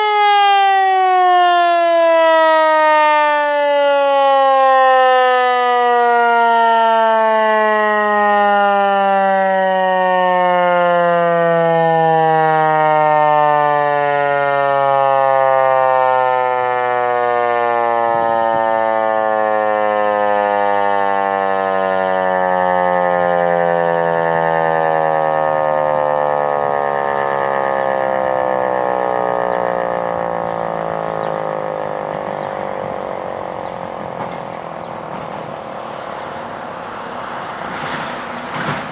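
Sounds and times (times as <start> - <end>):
warning siren winding down: 0.0 - 38.9.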